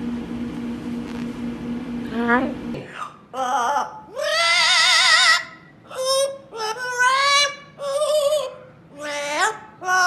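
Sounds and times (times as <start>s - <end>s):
parrot singing: 3.0s - 10.0s.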